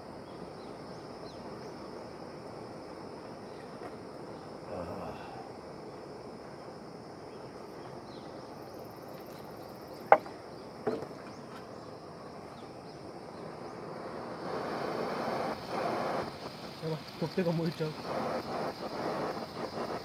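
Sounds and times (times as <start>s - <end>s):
faint chirps: 3.4s - 6.0s, 7.3s - 20.0s
low outdoor rush: 11.2s - 20.0s.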